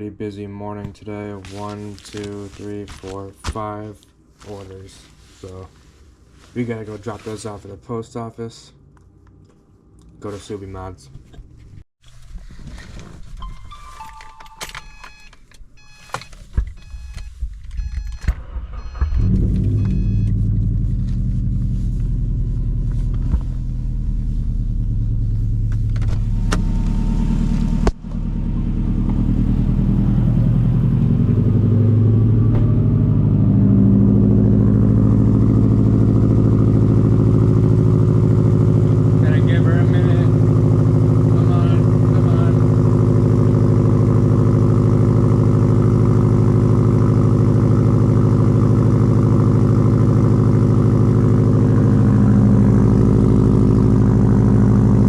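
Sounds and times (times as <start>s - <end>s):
car engine starting and idling: 12.8s - 55.0s
car electronic chimes: 13.4s - 20.4s.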